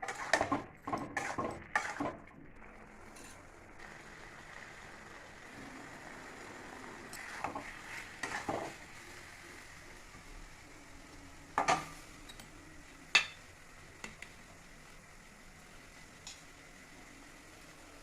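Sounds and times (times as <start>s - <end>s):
utensils and pots clinking: 11.6s - 12.5s.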